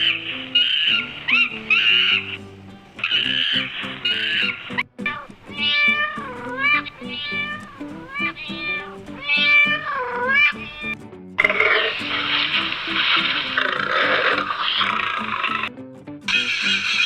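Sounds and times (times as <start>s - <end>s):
cat meowing: 0.0s - 2.4s, 3.0s - 11.0s, 13.4s - 15.7s
background music: 0.0s - 17.0s.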